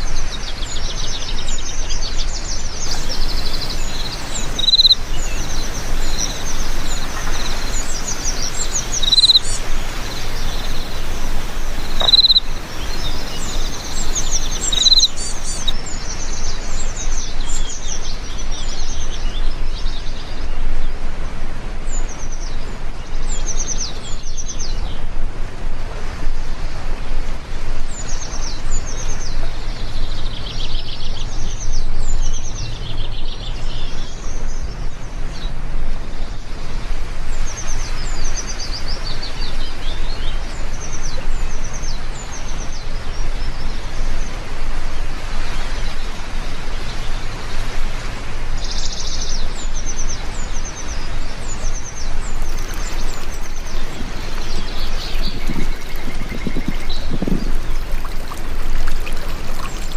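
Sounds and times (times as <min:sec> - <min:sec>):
birds chirping: 0:02.9 - 0:15.8, 0:52.2 - 0:59.9
heavy rain hissing: 0:02.9 - 0:15.8, 0:52.3 - 0:59.9
whistled bird notes: 0:02.9 - 0:15.8, 0:52.4 - 0:59.9.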